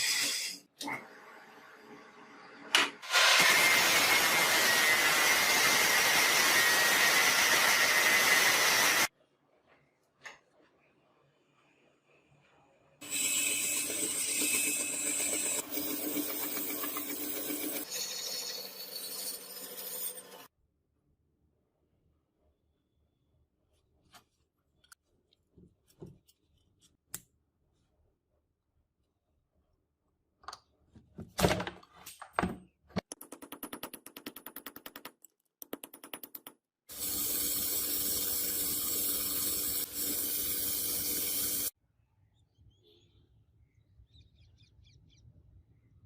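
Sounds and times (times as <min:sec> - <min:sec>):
power tool running: 0:03.1 - 0:09.1.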